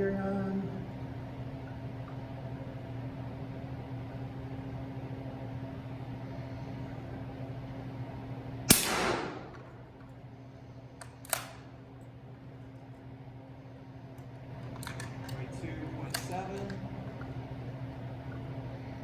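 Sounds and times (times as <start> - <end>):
steady low hum: 0.0 - 19.0
suppressed rifle shot: 8.7 - 9.8.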